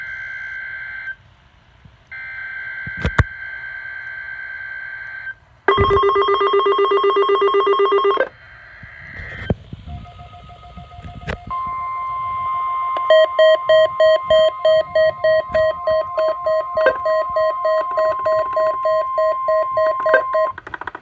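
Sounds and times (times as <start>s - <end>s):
pulsing alarm beep: 5.7s - 8.2s, 9.9s - 20.6s
buzzy electronic data warble: 8.6s - 20.5s
sharp clicks: 19.8s - 21.0s.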